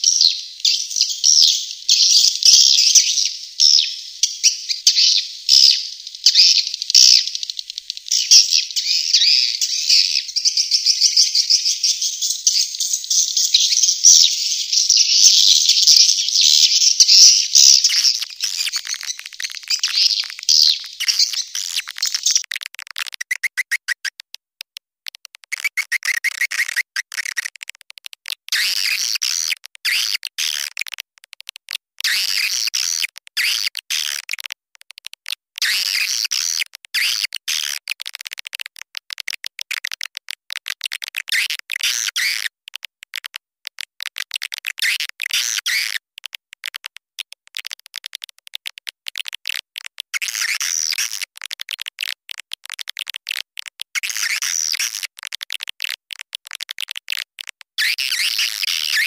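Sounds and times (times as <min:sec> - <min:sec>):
swiftlet twittering chatter: 0:00.0 - 0:22.4.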